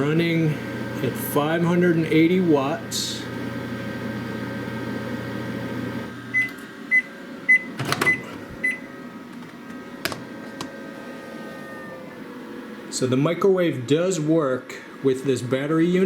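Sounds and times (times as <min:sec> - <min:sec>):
microwave oven humming: 0:00.0 - 0:16.0
sharp clicks and knocks: 0:09.3 - 0:10.8.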